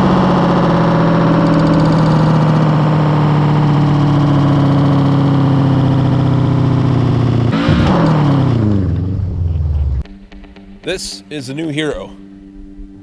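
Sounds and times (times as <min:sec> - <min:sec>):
car engine revving: 0:00.0 - 0:10.1.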